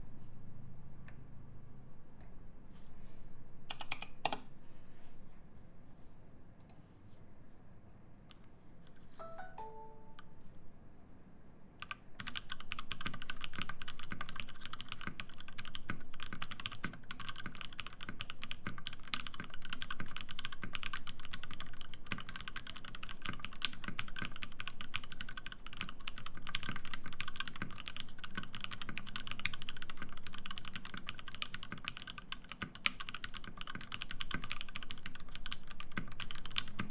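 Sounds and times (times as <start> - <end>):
mechanical keyboard typing: 3.7 - 4.5, 11.8 - 36.9.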